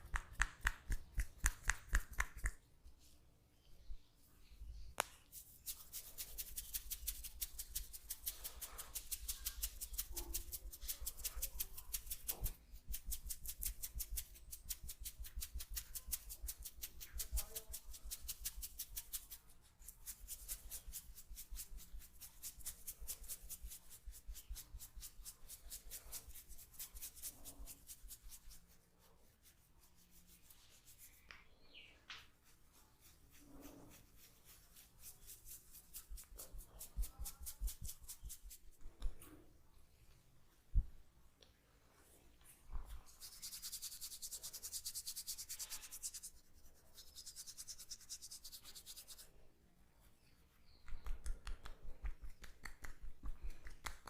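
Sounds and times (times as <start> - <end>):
comb scratching through hair: 5.2 - 31.3, 32.3 - 39.4, 42.8 - 49.3.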